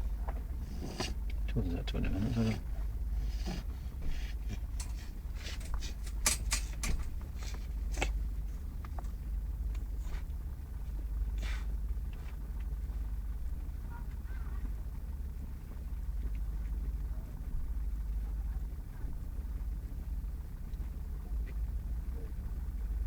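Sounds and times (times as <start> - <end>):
low engine rumble: 0.0 - 23.0
sharp clicks and knocks: 4.8 - 7.2.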